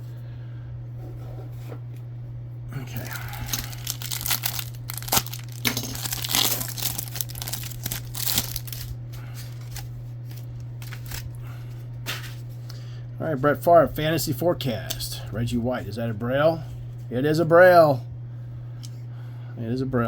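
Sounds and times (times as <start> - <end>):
wrapper crinkling and tearing: 2.9 - 11.4.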